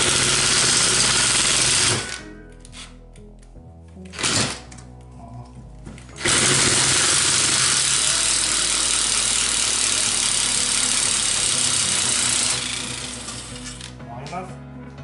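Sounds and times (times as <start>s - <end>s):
power tool rapid hammering: 0.0s - 2.2s, 4.2s - 4.6s, 6.2s - 13.9s.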